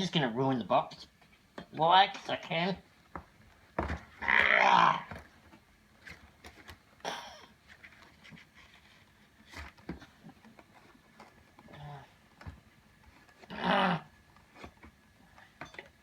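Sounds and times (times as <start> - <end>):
packaging clicks and rustles: 5.1 - 13.5.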